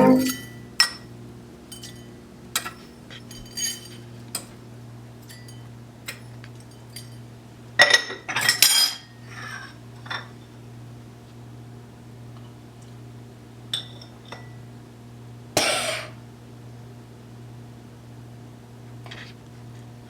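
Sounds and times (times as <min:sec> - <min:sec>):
steady low hum: 0:00.0 - 0:00.9, 0:01.7 - 0:04.1
cutlery and dishes clinking: 0:00.0 - 0:01.0, 0:01.7 - 0:04.6, 0:05.2 - 0:07.2.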